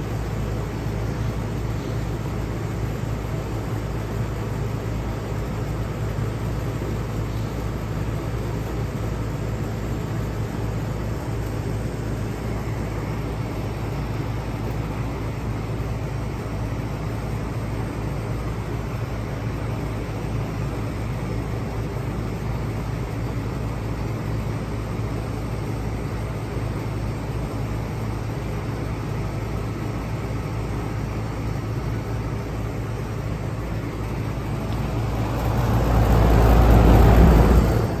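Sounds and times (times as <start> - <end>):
fan rushing: 31.3 - 38.0.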